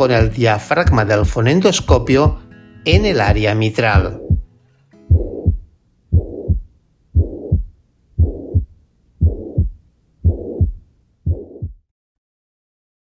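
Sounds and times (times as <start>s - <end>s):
heartbeat: 0.2s - 4.5s, 5.1s - 11.9s
blowing heart murmur: 4.0s - 4.5s, 5.1s - 11.8s.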